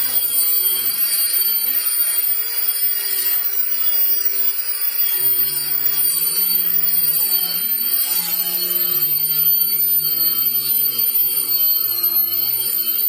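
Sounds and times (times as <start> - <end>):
electric sander on wood: 0.0 - 13.0.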